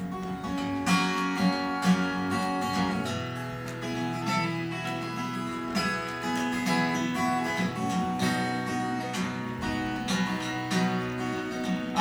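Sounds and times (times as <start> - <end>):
strummed acoustic guitar: 0.0 - 12.0.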